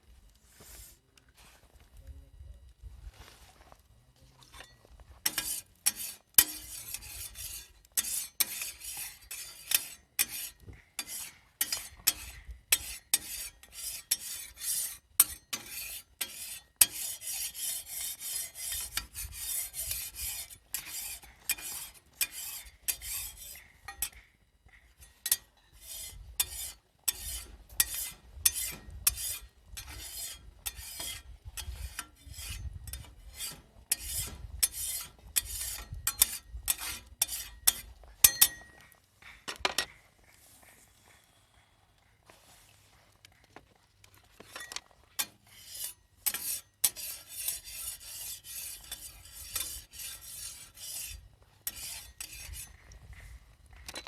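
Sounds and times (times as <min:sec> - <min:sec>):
metal spatula scraping griddle: 0:04.4 - 0:24.2, 0:24.9 - 0:38.8, 0:44.4 - 0:52.8.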